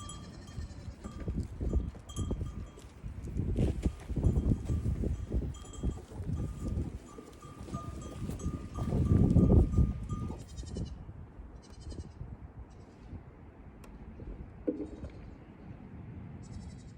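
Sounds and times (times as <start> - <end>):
goat hooves clattering: 0.0 - 10.5.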